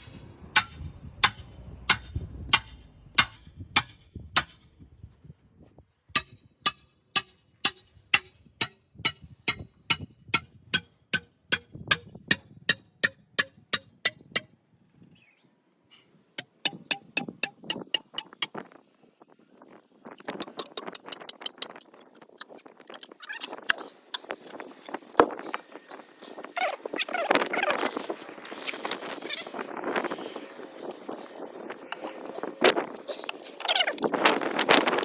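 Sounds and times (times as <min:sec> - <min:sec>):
hammer striking steel: 0:00.6 - 0:04.6, 0:06.2 - 0:14.5, 0:16.4 - 0:18.6, 0:20.3 - 0:21.8.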